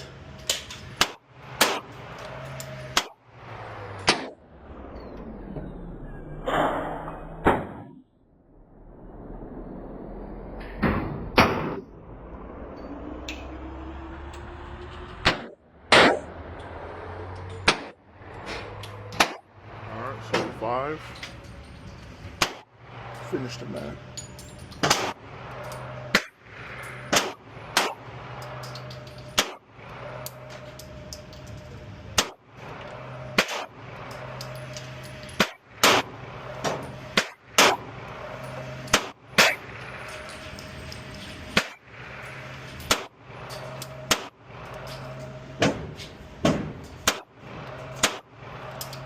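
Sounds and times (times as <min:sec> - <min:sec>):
pistol gunshots: 0:15.3 - 0:16.3, 0:27.1 - 0:28.0, 0:33.4 - 0:33.7, 0:46.4 - 0:47.3.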